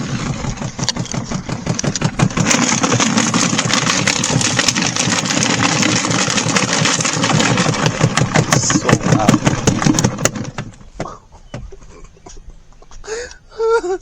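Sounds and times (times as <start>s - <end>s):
washing machine motor throb: 0.0s - 10.8s
junk rattling in washing machine: 6.9s - 10.8s.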